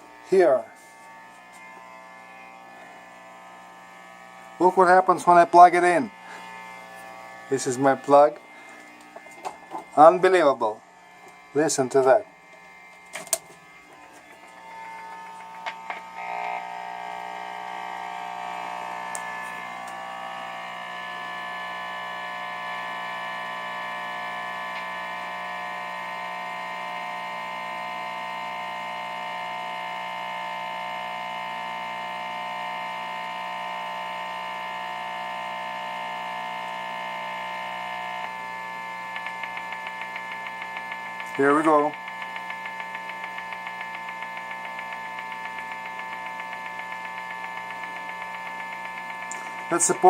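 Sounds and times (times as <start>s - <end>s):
high-pitched electrical buzz: 0.0s - 50.0s
amplifier clicks: 15.0s - 16.7s, 38.1s - 50.0s.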